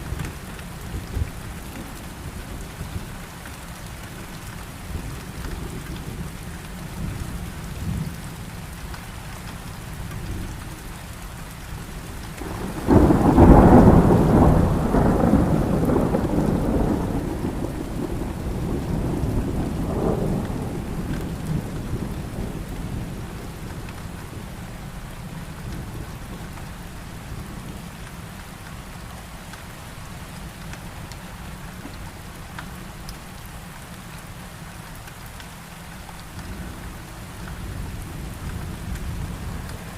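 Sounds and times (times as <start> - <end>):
steady rain: 0.0 - 39.9
rolling thunderclap: 12.4 - 24.4.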